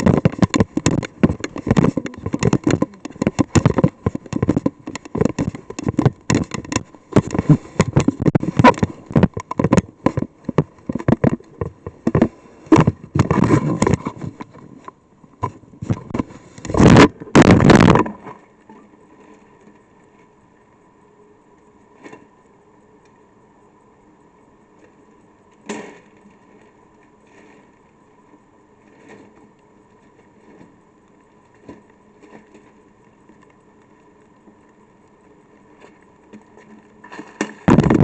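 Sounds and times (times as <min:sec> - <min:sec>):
raindrops tapping on microphone: 0:00.0 - 0:18.4, 0:37.0 - 0:38.0
faint electrical hum: 0:00.0 - 0:38.0.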